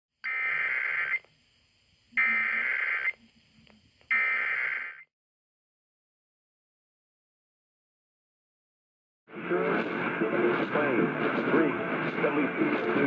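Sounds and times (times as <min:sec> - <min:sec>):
digital data tone bursts: 0:02.2 - 0:03.2, 0:04.1 - 0:05.0.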